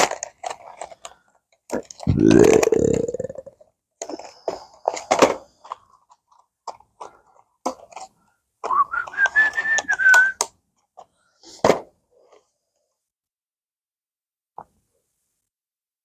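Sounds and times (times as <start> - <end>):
packaging clicks and rustles: 0.0 - 2.0
person whistling a tune: 8.7 - 10.4.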